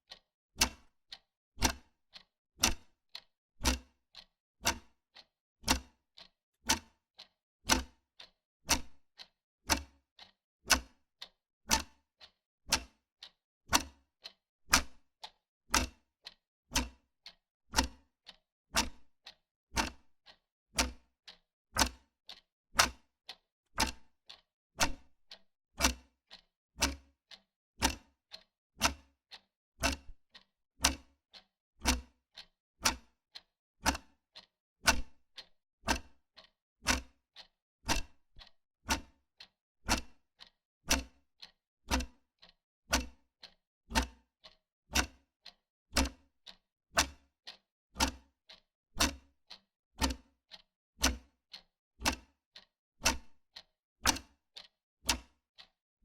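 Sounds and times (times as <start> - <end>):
wall clock ticking: 9.7 - 9.9, 11.7 - 13.0, 14.7 - 15.0, 17.8 - 18.0, 19.8 - 20.0, 20.8 - 21.1, 23.8 - 26.1, 27.8 - 32.2, 32.8 - 40.5, 44.0 - 50.3, 51.0 - 55.7.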